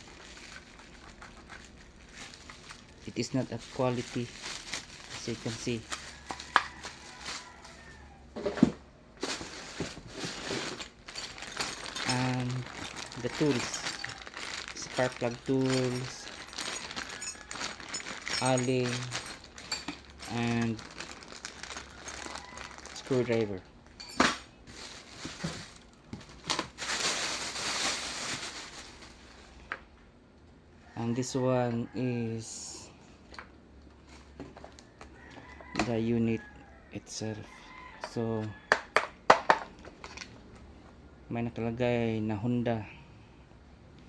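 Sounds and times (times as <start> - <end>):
packaging crinkling and rustling: 0.0 - 29.7.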